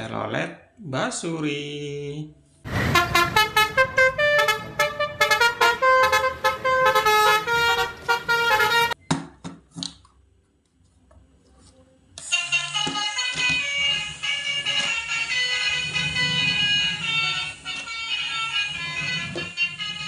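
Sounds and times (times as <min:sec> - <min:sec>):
multi-tone bus horn melody: 0:02.7 - 0:09.0, 0:12.3 - 0:20.0.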